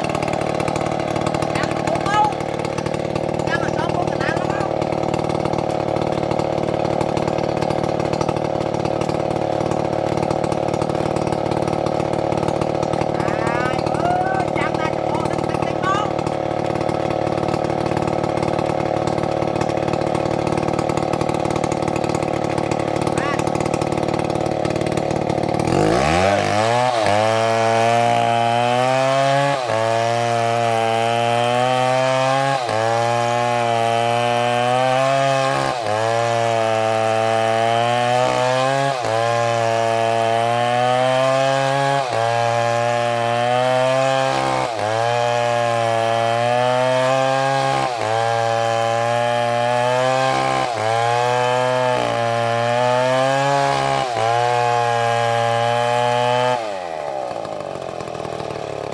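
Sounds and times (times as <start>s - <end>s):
chainsaw revving: 0.0s - 58.9s.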